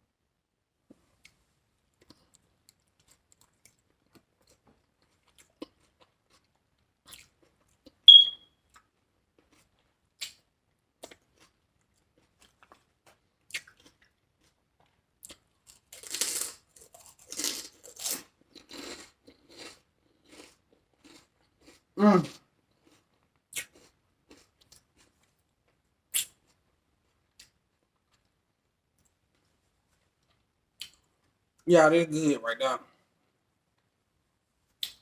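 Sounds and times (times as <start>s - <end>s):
high-pitched squeak: 8.1s - 8.4s
crunchy bites and chewing: 11.0s - 25.2s.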